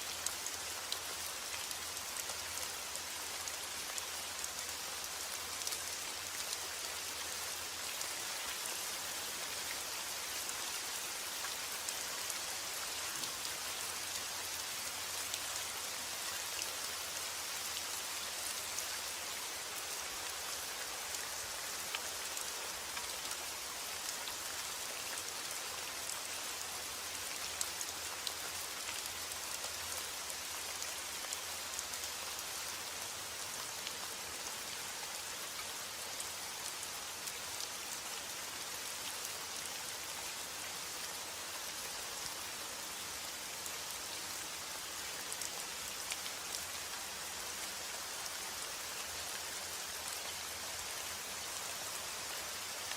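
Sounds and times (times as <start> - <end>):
steady rain falling: 0.0 - 52.9.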